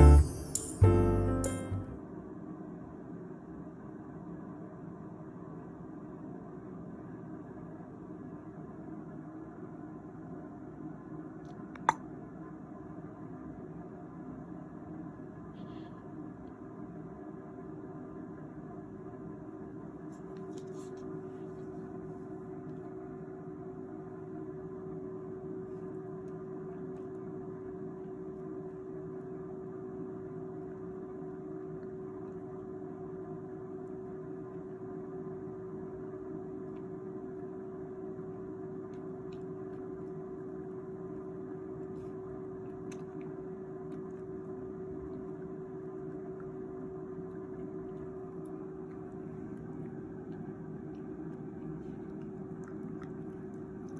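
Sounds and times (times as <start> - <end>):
steady machine hum: 0.0 - 2.0.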